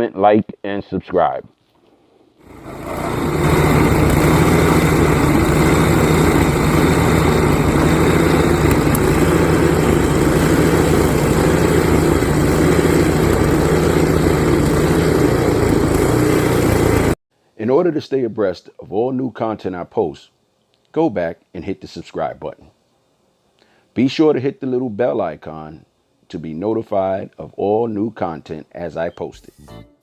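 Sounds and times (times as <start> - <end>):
snowblower engine running: 2.4 - 17.2.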